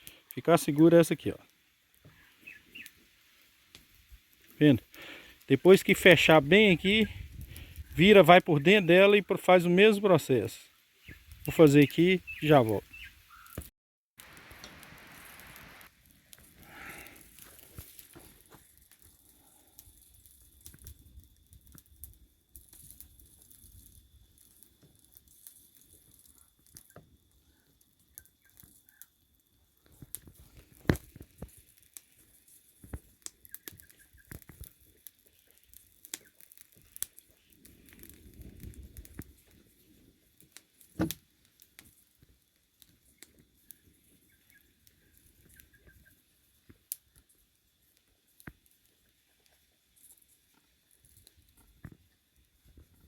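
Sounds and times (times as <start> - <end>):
handling crackles and rustles: 13.4 - 53.0.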